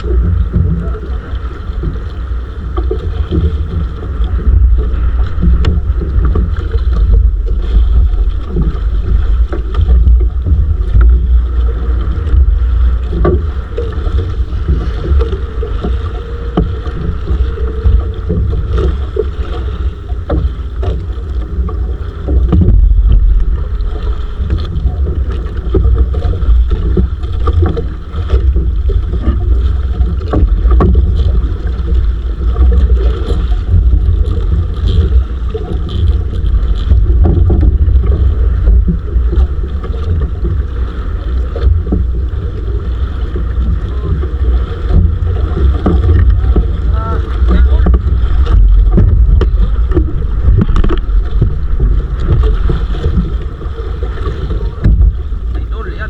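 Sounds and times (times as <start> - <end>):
wind buffeting microphone: 0.0 - 56.0
small knocks: 44.9 - 53.3.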